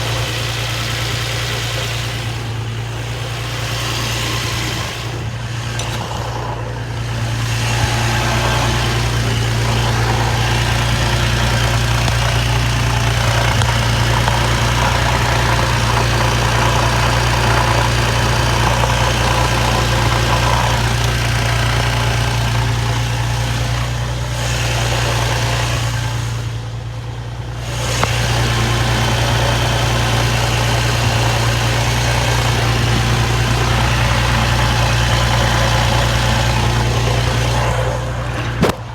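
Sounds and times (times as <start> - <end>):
car engine idling with rattle: 0.0 - 38.9
clunk from underneath car: 36.8 - 38.9.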